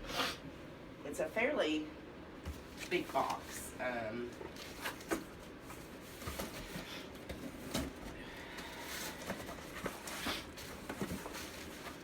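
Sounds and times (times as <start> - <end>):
cardboard box rustling and crinkling: 4.5 - 12.0.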